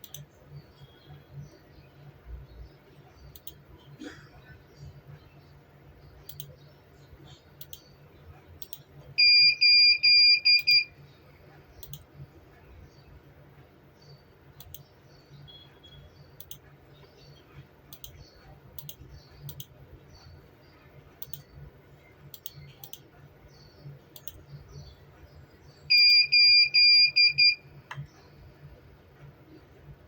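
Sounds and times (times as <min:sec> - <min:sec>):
computer mouse clicking: 0:00.0 - 0:00.3, 0:03.2 - 0:03.7, 0:06.2 - 0:06.7, 0:07.5 - 0:07.9, 0:08.6 - 0:08.9, 0:11.7 - 0:12.1, 0:14.6 - 0:14.9, 0:16.4 - 0:17.3, 0:17.9 - 0:19.8, 0:21.2 - 0:21.7, 0:22.3 - 0:23.2, 0:24.1 - 0:24.5.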